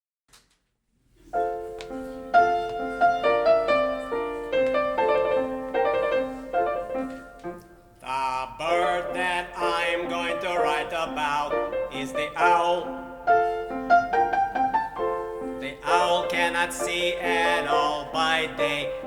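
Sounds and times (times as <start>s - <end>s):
solo piano: 1.3s - 19.0s
tenor singing with vibrato: 8.0s - 19.0s.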